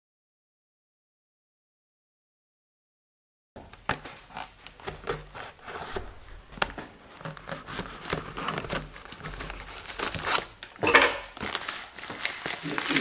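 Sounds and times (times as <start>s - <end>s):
rubbing and scraping packaging: 3.9s - 13.0s.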